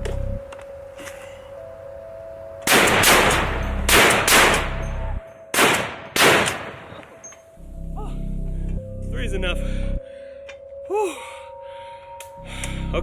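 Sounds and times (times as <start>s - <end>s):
rifle shots echoing: 2.7s - 4.8s, 5.5s - 7.2s.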